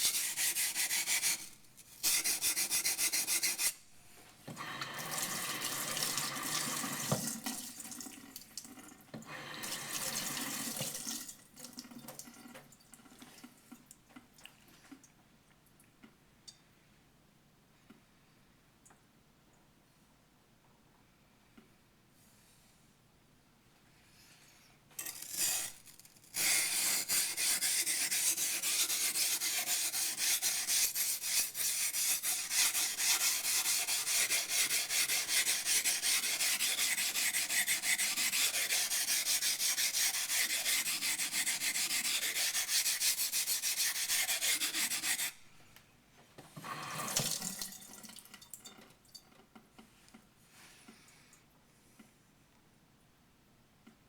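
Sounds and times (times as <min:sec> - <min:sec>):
knife scraping on wet whetstone: 0:00.0 - 0:03.8, 0:25.0 - 0:45.4.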